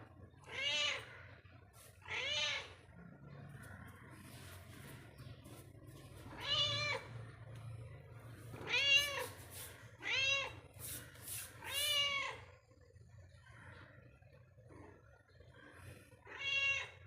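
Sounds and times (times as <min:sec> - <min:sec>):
cat meowing: 0:00.4 - 0:01.2, 0:02.0 - 0:02.9, 0:06.2 - 0:07.2, 0:08.6 - 0:09.4, 0:10.0 - 0:10.7, 0:11.6 - 0:12.5, 0:16.2 - 0:17.0.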